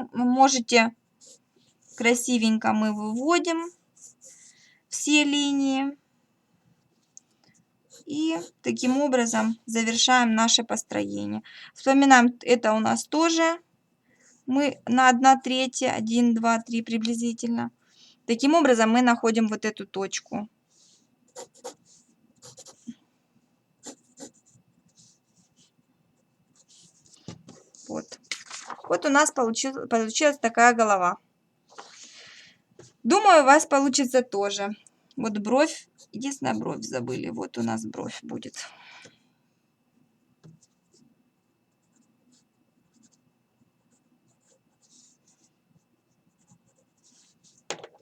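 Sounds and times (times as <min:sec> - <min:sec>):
pencil scratching on paper: 0:01.2 - 0:02.2, 0:03.0 - 0:04.4, 0:07.9 - 0:09.0, 0:20.7 - 0:23.0, 0:23.8 - 0:25.8, 0:26.6 - 0:28.2, 0:41.8 - 0:43.2, 0:43.8 - 0:47.7.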